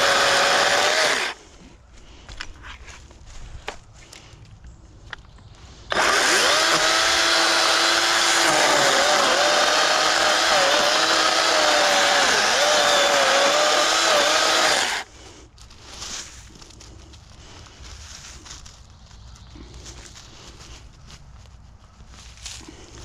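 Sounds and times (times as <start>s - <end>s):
electric chainsaw cutting wood: 0.0s - 1.4s, 5.9s - 15.1s.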